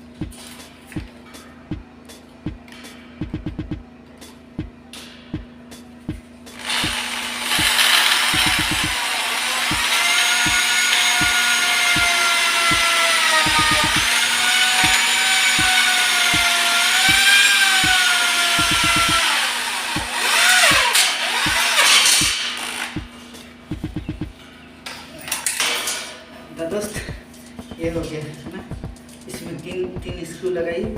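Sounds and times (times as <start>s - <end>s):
power tool motor whine: 6.6s - 23.2s.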